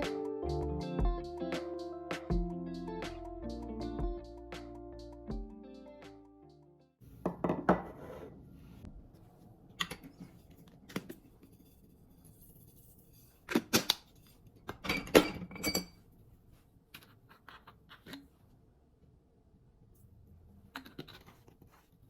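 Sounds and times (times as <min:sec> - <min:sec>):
kitchen items clattering: 0:14.7 - 0:16.0.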